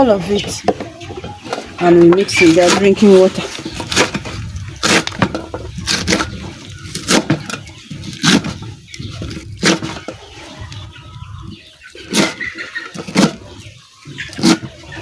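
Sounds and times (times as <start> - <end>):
low rumble: 3.6 - 7.0.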